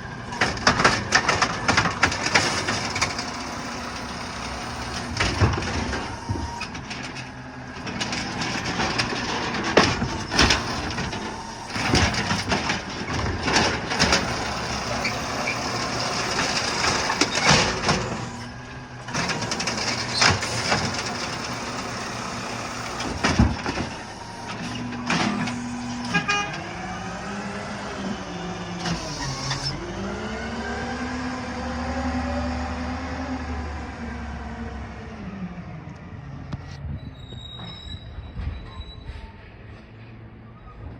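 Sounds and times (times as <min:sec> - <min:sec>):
garbage truck engine: 0:00.0 - 0:40.9
bangs and clanks of trash cart: 0:00.2 - 0:28.0.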